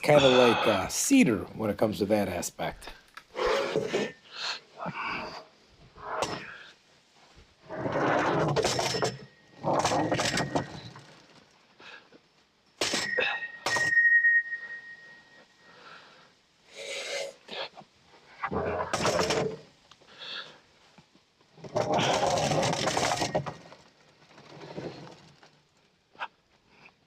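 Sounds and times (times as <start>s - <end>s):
metal clanking and knocking: 8.2s - 11.0s
metal hit ringing tone: 12.8s - 15.4s.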